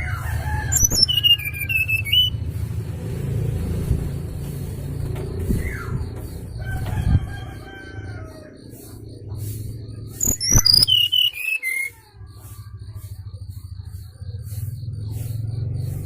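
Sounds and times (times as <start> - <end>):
rooster crowing: 0.0 - 2.4, 5.6 - 9.1
high whistled bird call: 0.7 - 2.5, 8.3 - 13.0
low rumble: 1.9 - 7.4.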